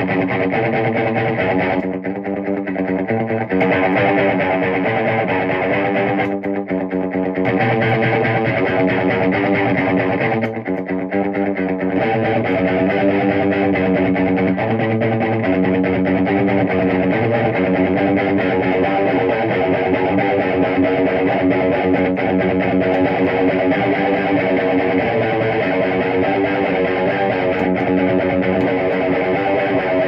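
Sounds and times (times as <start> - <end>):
overdriven electric guitar: 0.0 - 30.0.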